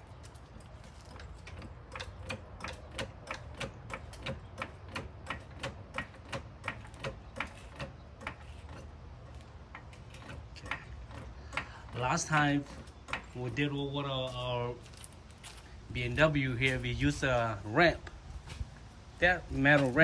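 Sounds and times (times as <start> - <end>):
car jack clicking: 1.0 - 13.4.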